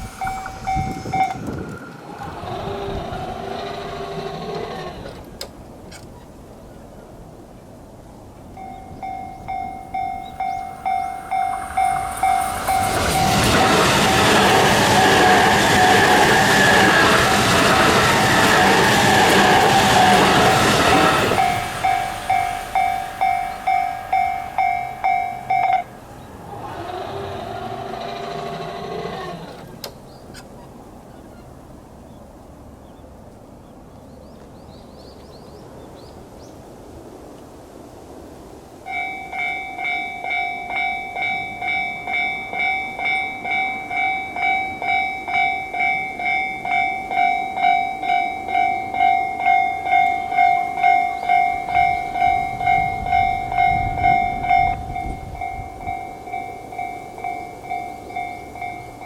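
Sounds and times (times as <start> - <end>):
low rumble: 0.0 - 4.0
level-crossing warning bell: 0.0 - 5.2, 8.5 - 29.6, 38.9 - 59.0
quiet outdoor ambience: 0.0 - 15.4, 19.5 - 59.0.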